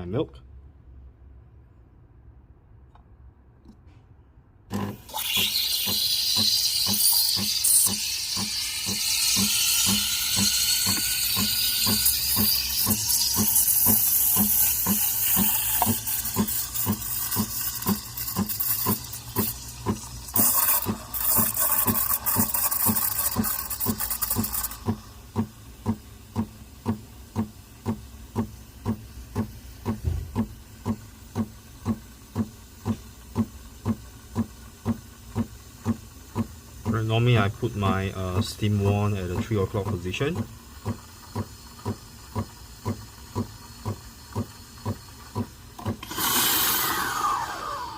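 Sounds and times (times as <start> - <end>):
steam wand hissing into milk: 4.7 - 25.1, 40.8 - 47.9
machine pulsing steadily: 4.8 - 47.9.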